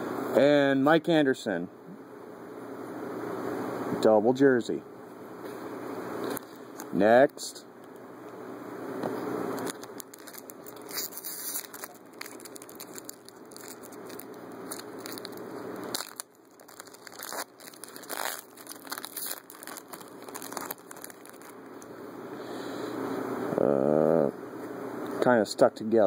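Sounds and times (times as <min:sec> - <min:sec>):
wrapper tearing and crinkling: 0:09.6 - 0:21.7.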